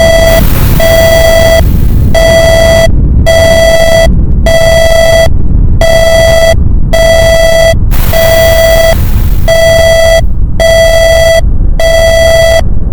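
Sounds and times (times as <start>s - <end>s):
buzzy electronic alarm beep: 0.0s - 12.6s
deep volcanic rumble: 0.0s - 12.9s
hissing blast: 0.1s - 2.5s, 7.9s - 10.3s.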